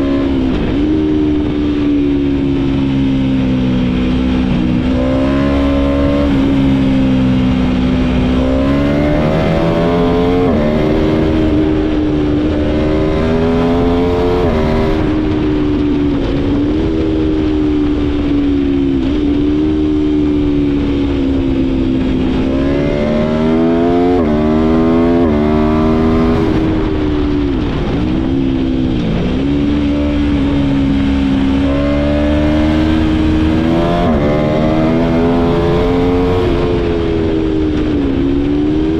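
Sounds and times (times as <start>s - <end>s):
motorcycle engine revving: 0.0s - 38.9s
wind rush: 0.0s - 38.9s.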